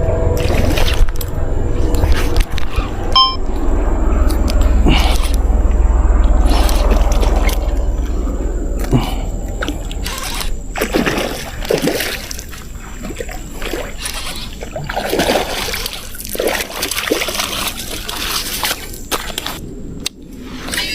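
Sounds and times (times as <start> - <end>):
water splashing and sloshing: 0.0 - 20.9
water trickling: 4.2 - 19.6.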